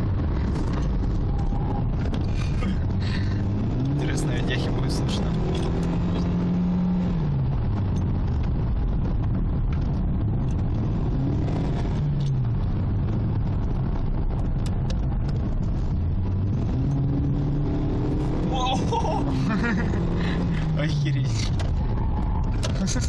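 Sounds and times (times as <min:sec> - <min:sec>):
car engine: 0:00.0 - 0:23.0
road and tyre noise: 0:00.0 - 0:23.0.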